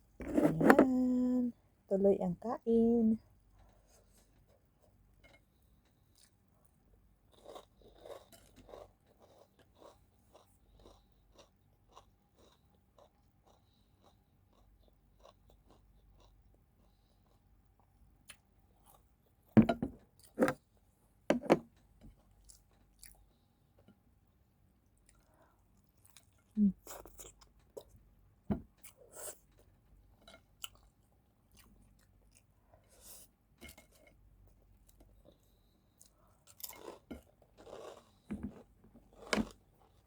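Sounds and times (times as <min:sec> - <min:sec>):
person chewing food: 0:07.3 - 0:20.6, 0:22.1 - 0:23.9, 0:25.0 - 0:28.0, 0:28.7 - 0:33.3, 0:34.5 - 0:40.0.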